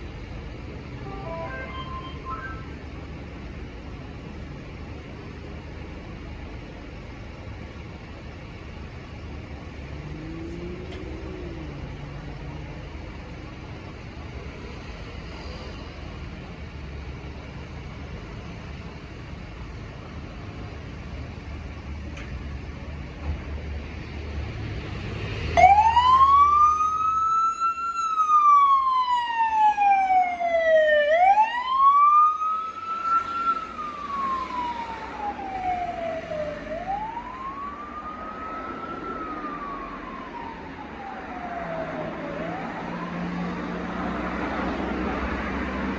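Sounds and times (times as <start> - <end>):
low vehicle rumble: 0.0 - 24.6
fire engine siren wailing: 0.8 - 3.2, 9.6 - 13.3, 25.6 - 45.7.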